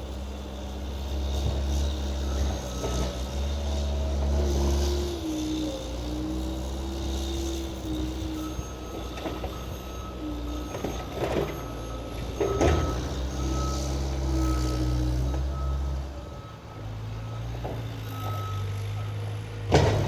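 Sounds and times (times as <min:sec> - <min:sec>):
skid steer engine droning: 0:00.0 - 0:20.0
reversing alarm beeping: 0:07.7 - 0:19.5
blade clunking on pavement: 0:19.6 - 0:20.0.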